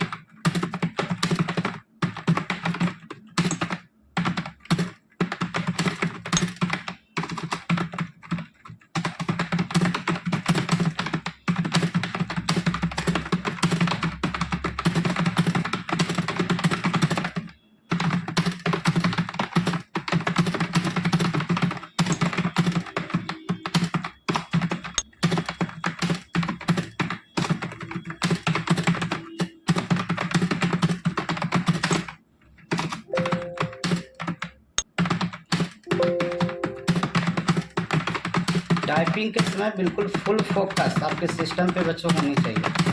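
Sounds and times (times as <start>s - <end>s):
fast typing on keyboard: 0.0s - 42.9s
music: 33.1s - 34.2s, 35.9s - 37.4s.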